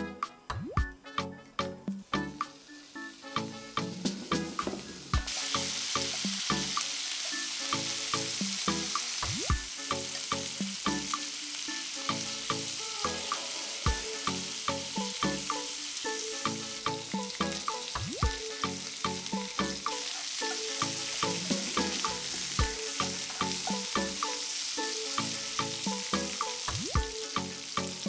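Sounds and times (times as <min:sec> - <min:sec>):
background music with a beat: 0:00.0 - 0:28.0
beef sizzling in a frying pan: 0:02.3 - 0:28.0.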